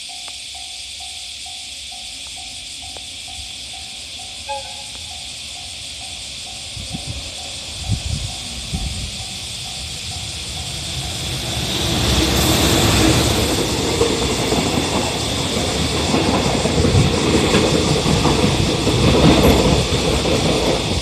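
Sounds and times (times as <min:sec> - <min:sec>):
freight train passing: 0:00.0 - 0:21.0
train wheels clattering on rails: 0:00.0 - 0:21.0.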